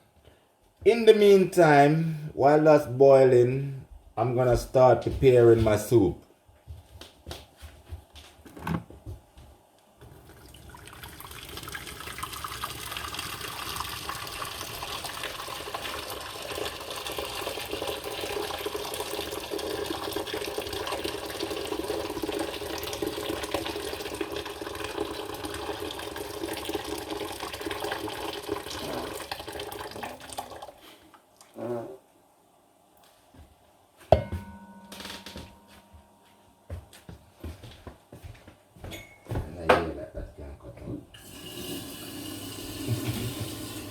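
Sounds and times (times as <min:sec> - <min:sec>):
water running from tap: 0:10.2 - 0:30.8, 0:41.2 - 0:43.9.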